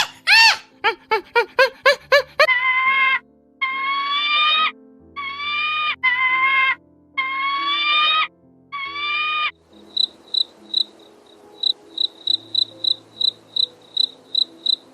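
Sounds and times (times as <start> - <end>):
cricket chirping: 9.8 - 14.9.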